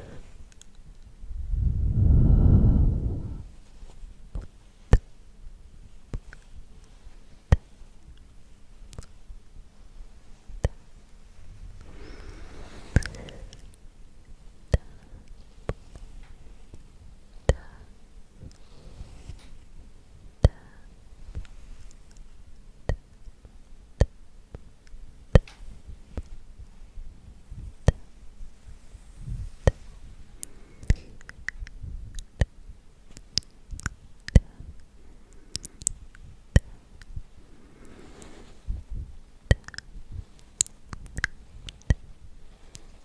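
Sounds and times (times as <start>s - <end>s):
soft rustling: 0.0s - 14.6s, 18.4s - 20.4s, 21.0s - 22.5s, 25.6s - 31.2s, 35.3s - 43.0s
sharp crisp clicks: 39.5s - 42.0s.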